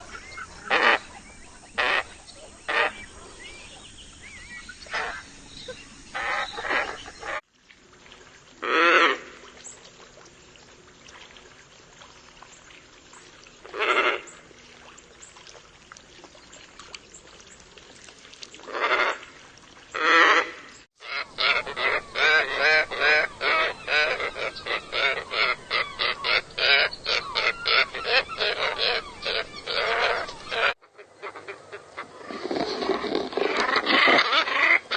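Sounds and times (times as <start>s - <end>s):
ibis calling: 0.0s - 7.4s, 19.9s - 34.9s.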